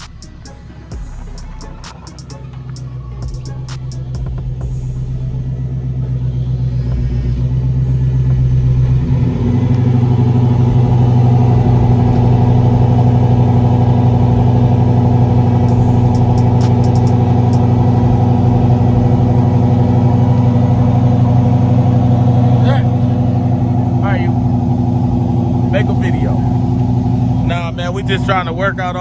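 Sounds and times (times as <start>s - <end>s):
car engine running: 0.0s - 29.0s.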